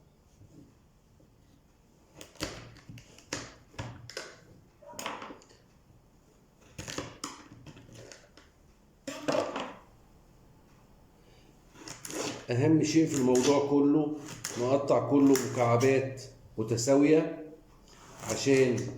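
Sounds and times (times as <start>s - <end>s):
knife chopping on cutting board: 13.1s - 15.8s.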